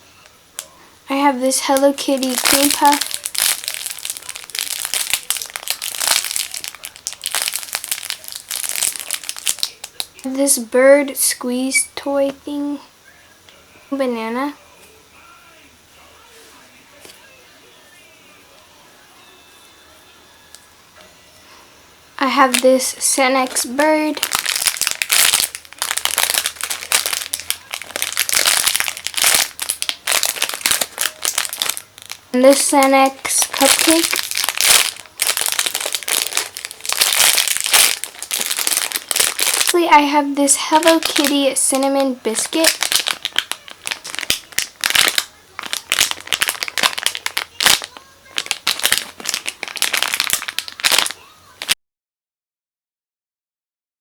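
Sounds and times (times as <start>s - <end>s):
plastic packaging crinkling: 0.6s - 11.6s, 22.2s - 51.8s.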